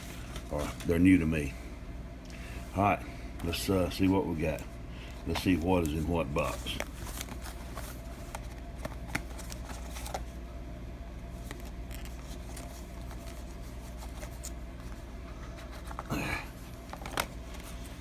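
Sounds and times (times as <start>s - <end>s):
steady low hum: 0.0s - 18.0s
cardboard boxes clicking and rustling: 5.3s - 10.3s.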